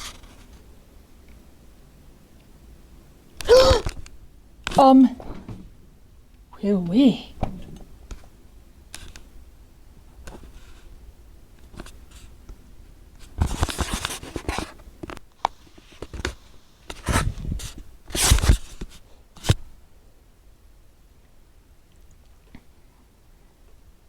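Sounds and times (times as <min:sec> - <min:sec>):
rustling and scraping handling: 0:00.0 - 0:00.7, 0:10.1 - 0:19.6.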